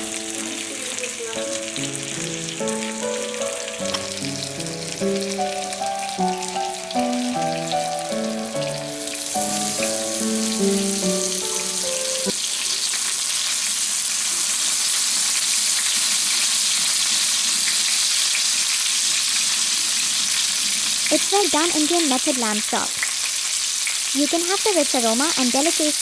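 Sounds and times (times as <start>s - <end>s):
tune of held notes: 0.0s - 12.4s
meat sizzling in a pan: 0.0s - 26.0s.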